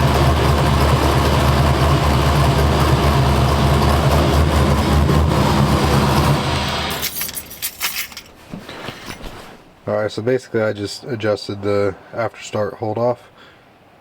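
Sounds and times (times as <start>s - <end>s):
truck engine idling: 0.0s - 7.0s.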